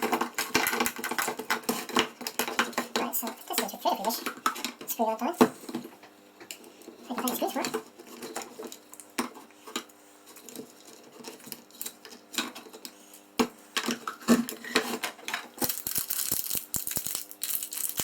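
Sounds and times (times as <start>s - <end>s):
crinkly rattling: 15.6s - 18.0s.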